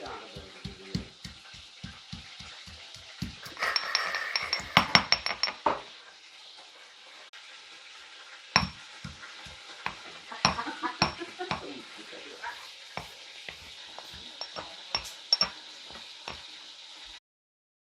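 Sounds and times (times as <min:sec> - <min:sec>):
pestle pounding thuds: 0:00.0 - 0:03.6, 0:04.6 - 0:05.4, 0:08.6 - 0:11.7.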